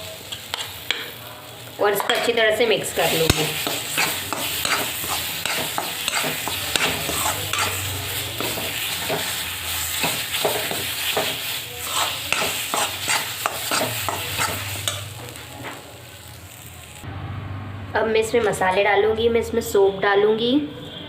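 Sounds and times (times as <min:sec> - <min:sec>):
light sizzle: 0:00.0 - 0:17.1
spoon stirring and scraping: 0:03.0 - 0:15.1.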